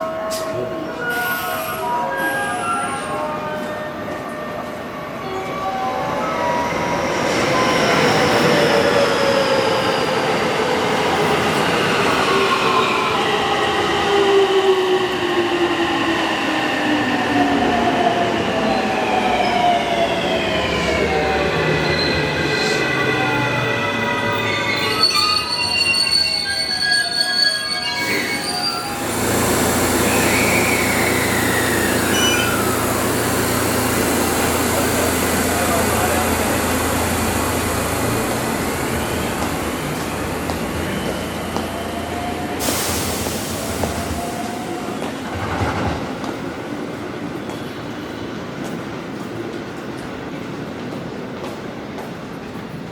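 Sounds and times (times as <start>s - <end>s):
high tone sliding down in pitch: 24.5s - 35.6s
train rumbling: 27.9s - 52.9s
electric train motor whine: 28.9s - 35.4s.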